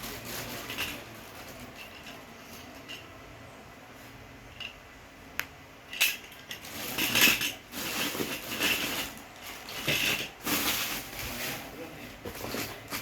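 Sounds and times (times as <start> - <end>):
packaging crinkling and rattling: 0.0 - 2.2, 6.0 - 13.0.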